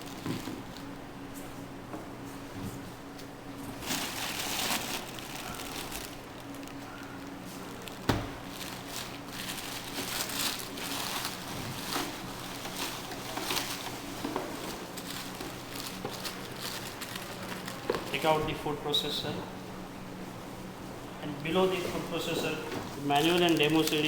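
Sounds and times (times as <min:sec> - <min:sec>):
packaging rustling and crinkling: 0:00.0 - 0:01.0, 0:03.6 - 0:18.4, 0:21.4 - 0:24.0.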